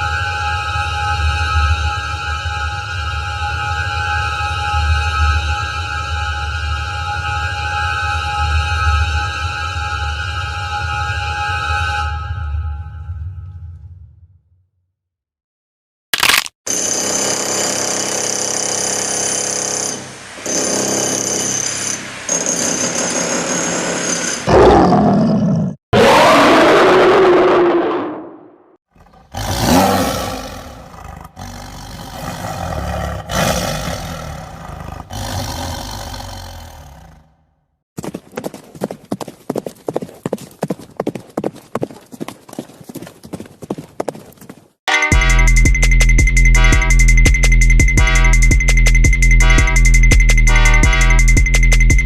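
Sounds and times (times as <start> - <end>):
roar-like growl sliding in pitch: 24.5 - 28.3, 28.9 - 37.4
buzzy humming creature tone: 29.0 - 37.2.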